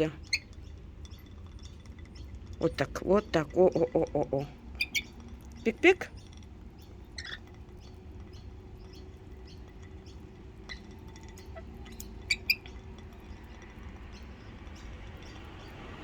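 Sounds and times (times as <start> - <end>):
birds chirping squeakily: 0.0 - 16.0
faint small clicks: 9.6 - 15.4.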